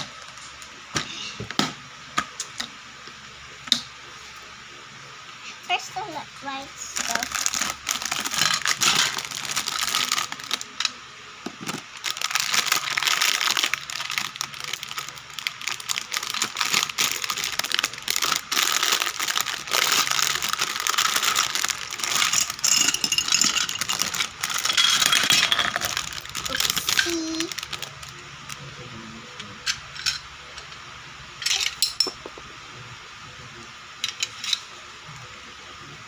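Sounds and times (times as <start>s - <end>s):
packaging rustling: 7.0s - 10.8s, 11.6s - 28.1s.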